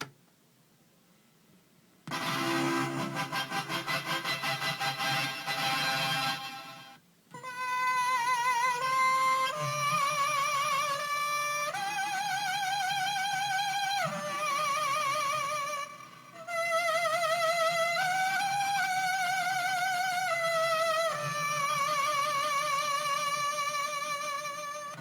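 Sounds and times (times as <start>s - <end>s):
buzzy electronic tone: 2.1s - 7.0s.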